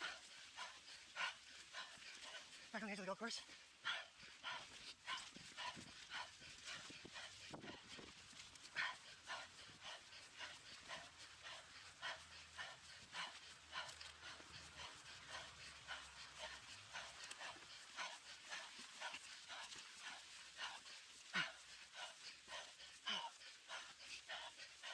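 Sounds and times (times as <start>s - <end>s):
heavy rhythmic panting: 0.0s - 24.9s.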